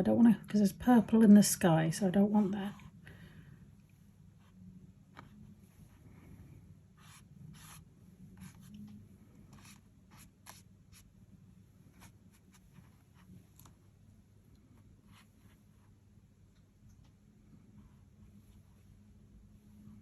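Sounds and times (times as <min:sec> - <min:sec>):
low background hum: 0:00.0 - 0:20.0
scratchy strokes on paper: 0:07.0 - 0:11.1, 0:11.8 - 0:13.8.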